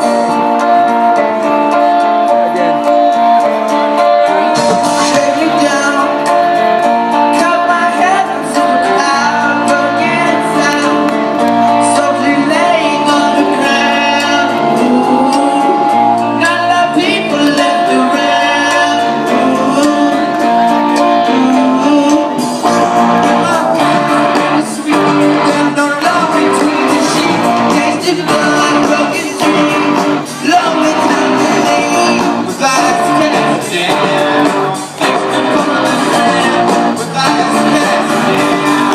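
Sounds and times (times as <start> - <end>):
guitars: 0.0 - 38.9
lead vocalist singing: 0.0 - 38.9
drum beat: 4.5 - 8.6, 21.4 - 38.9.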